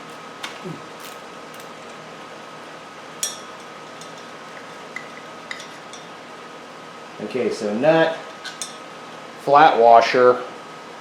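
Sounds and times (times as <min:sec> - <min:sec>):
shop hum: 0:00.0 - 0:11.0.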